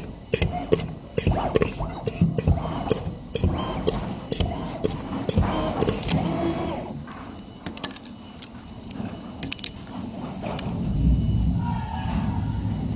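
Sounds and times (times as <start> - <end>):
faint machine whine: 0.0 - 12.9
machine low rumble: 8.2 - 12.9.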